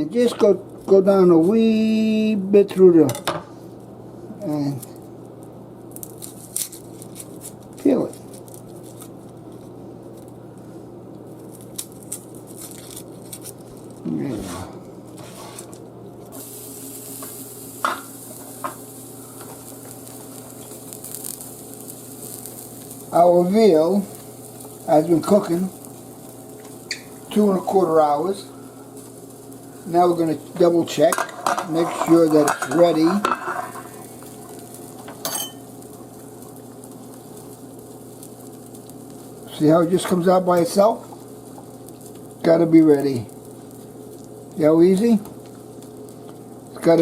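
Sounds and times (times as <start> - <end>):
pot sizzling: 4.4 - 47.0
liquid simmering: 31.3 - 39.2.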